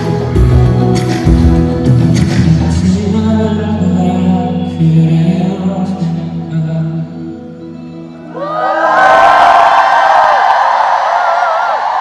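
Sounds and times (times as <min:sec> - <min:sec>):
audience screaming and cheering: 0:08.2 - 0:12.0.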